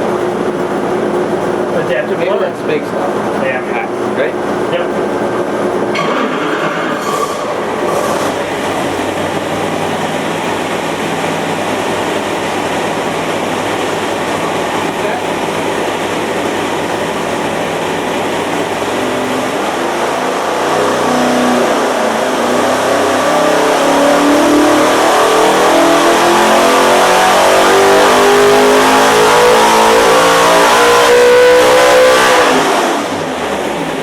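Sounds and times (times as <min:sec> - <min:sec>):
engine revving at full throttle: 0:07.8 - 0:34.0.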